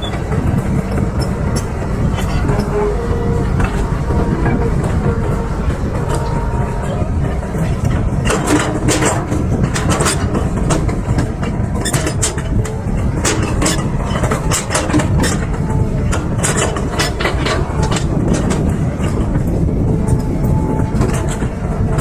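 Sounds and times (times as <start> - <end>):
excavator diesel engine running: 0.0 - 22.0
metallic clanks and knocks: 0.0 - 22.0.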